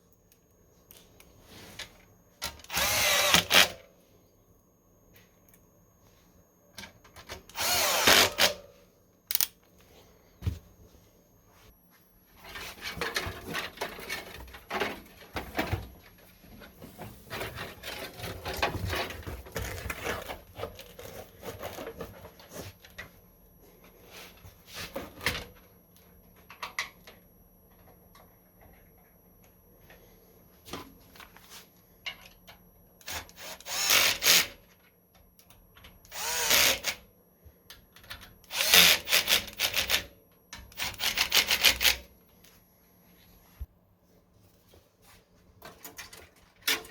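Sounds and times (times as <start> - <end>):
power screwdriver driving screws: 2.6 - 3.8, 7.5 - 8.6, 33.0 - 34.5, 36.1 - 37.0, 38.5 - 40.0
clicks and rattles of parts: 45.6 - 46.9.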